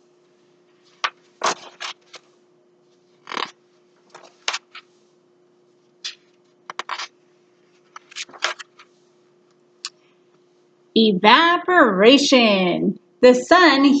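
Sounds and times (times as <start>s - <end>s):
faint steady hum: 0.0s - 14.0s
book pages turning: 0.8s - 2.4s, 3.1s - 5.0s, 6.0s - 9.0s.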